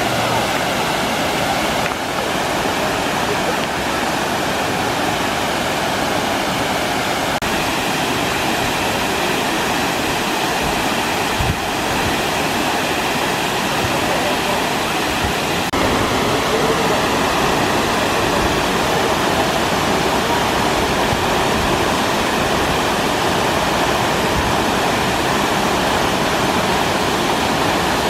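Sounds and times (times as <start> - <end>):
fountain water splashing: 0.0 - 28.0.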